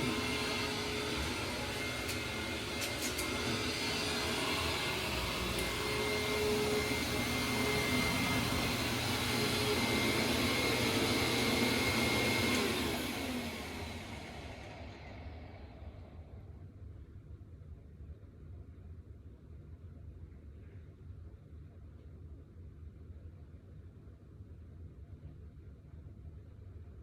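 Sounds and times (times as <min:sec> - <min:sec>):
vacuum cleaner motor whine: 0:00.0 - 0:16.6.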